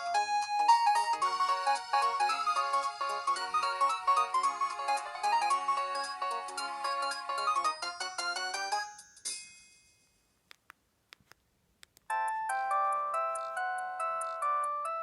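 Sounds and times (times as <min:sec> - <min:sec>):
electronic ringtone melody: 0:00.0 - 0:09.1, 0:12.1 - 0:15.0.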